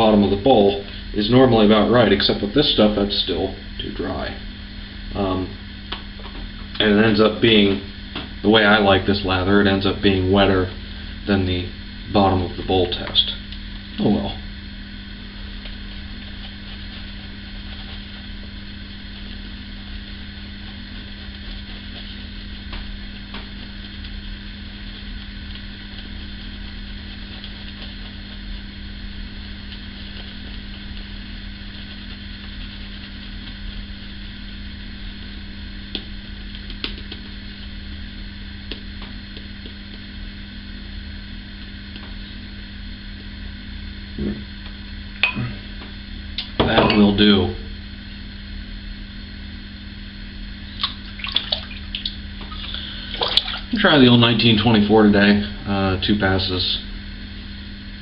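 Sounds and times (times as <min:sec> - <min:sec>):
electrical hum: 0:00.0 - 0:58.0
shaving brush swishing lather: 0:15.6 - 0:34.2.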